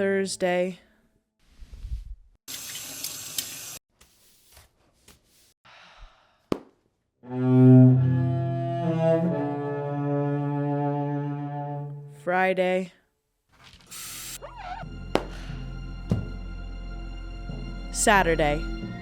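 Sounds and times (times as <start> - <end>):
low bowed string note: 7.3 - 12.2.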